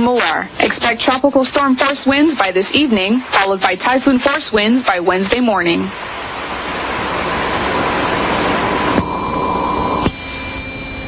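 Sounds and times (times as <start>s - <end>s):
static hiss: 0.0s - 10.6s
faint steady tone: 7.6s - 11.0s.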